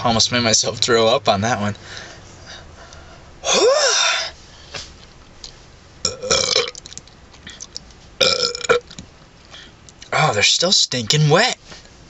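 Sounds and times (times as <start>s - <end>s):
man belching loudly: 6.1s - 6.8s, 8.2s - 8.8s.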